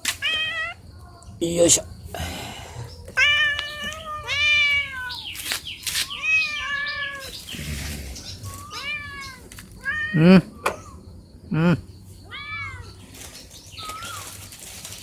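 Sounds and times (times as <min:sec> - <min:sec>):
cat meowing: 0:00.2 - 0:00.8, 0:03.1 - 0:05.4, 0:06.0 - 0:07.4, 0:08.4 - 0:11.0, 0:12.3 - 0:13.0.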